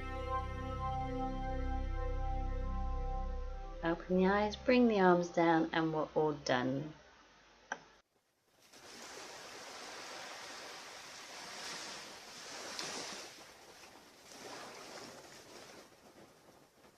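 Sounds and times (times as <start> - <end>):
ocean waves breaking on beach: 8.6 - 16.6.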